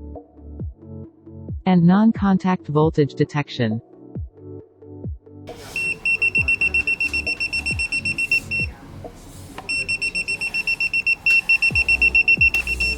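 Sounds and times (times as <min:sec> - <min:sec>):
multimeter buzzer beeping rapidly: 0:05.6 - 0:08.8, 0:09.7 - 0:12.9.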